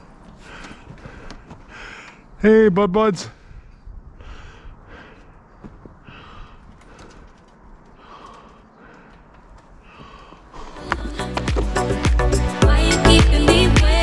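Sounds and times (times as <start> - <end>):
short breaths: 0.3 - 2.4, 3.3 - 10.9.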